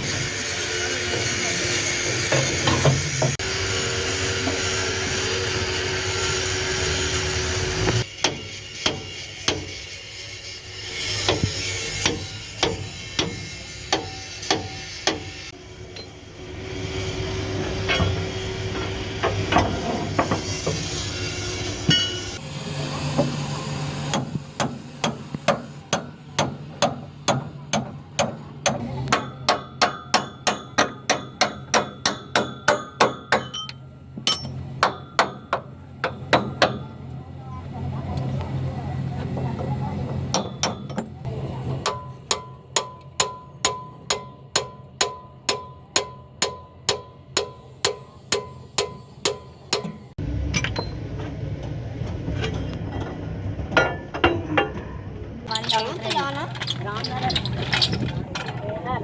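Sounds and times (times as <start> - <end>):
hammer ringing on steel: 21.9 - 22.4, 29.2 - 36.8.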